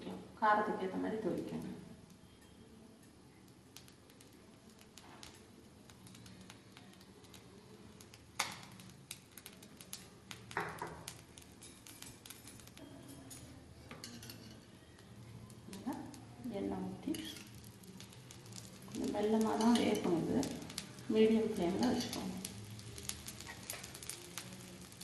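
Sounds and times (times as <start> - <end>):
steel kitchen utensils clinking: 11.6 - 14.7.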